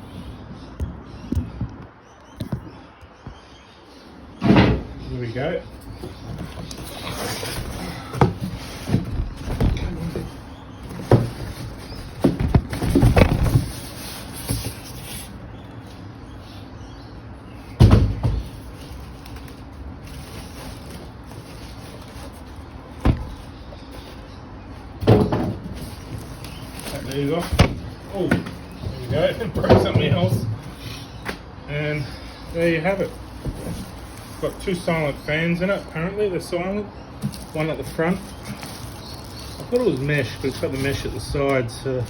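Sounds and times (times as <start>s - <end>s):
cardboard rustling and scuffing: 5.7s - 15.4s, 17.8s - 24.2s, 25.0s - 31.2s, 32.4s - 34.9s, 37.2s - 41.3s
knocks and thumps: 5.8s - 14.9s, 17.8s - 18.7s, 23.0s - 23.5s, 25.0s - 26.3s, 27.4s - 30.8s.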